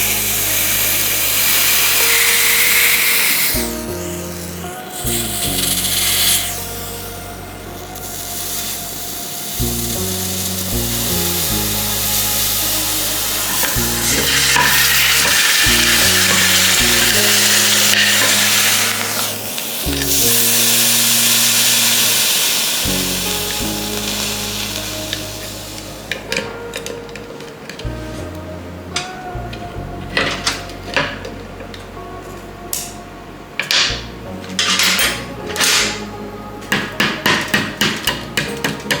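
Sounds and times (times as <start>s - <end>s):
hot metal sizzling on ice: 0.0s - 26.4s
background music with bass: 0.0s - 39.0s.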